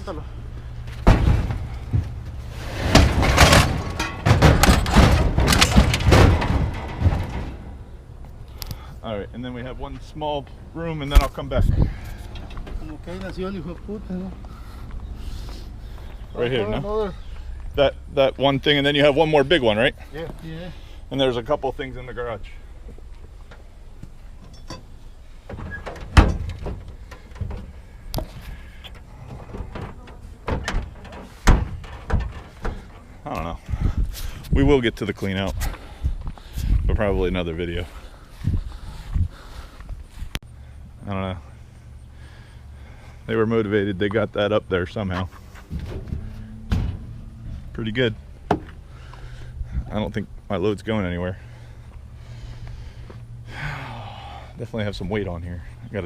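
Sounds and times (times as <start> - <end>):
scrap metal bangs and thuds: 0.8 - 8.3, 24.4 - 34.5, 45.3 - 49.9.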